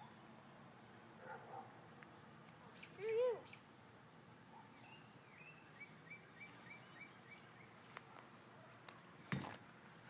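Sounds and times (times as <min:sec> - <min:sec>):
faint bird chirps: 0:02.5 - 0:03.8, 0:04.6 - 0:07.8.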